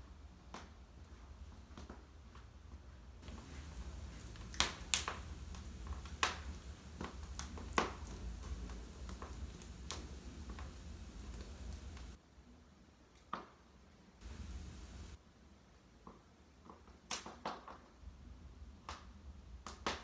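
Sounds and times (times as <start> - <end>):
sharp pops of fire: 3.2 - 12.2, 14.2 - 15.2
wood fire crackling: 3.2 - 12.2, 14.2 - 15.2.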